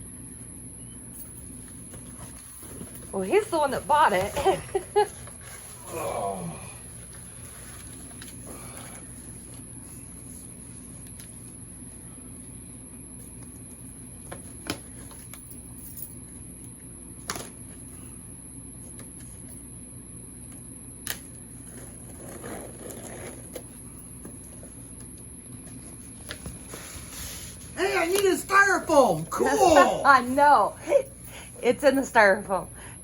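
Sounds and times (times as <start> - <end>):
low room hum: 0.0 - 33.0
soft rustling of packing material: 6.8 - 11.5.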